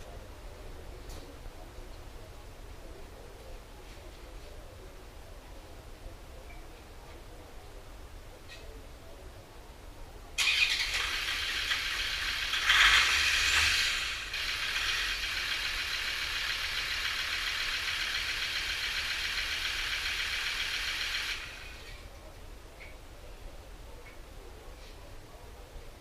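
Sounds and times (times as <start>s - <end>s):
diesel engine running: 10.4s - 22.0s.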